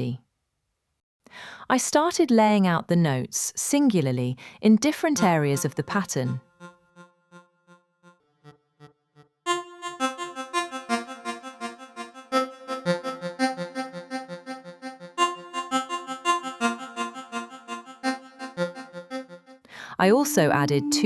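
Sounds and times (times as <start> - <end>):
synthesizer melody: 5.2 - 8.9, 9.5 - 21.0.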